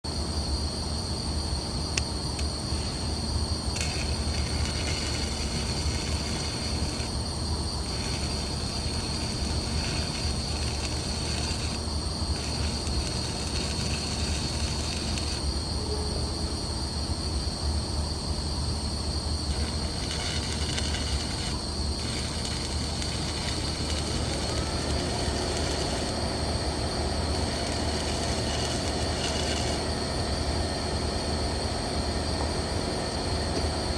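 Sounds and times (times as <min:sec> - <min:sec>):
constant high whine: 0:00.0 - 0:33.9
arc welding hiss: 0:01.9 - 0:15.6, 0:19.4 - 0:31.1.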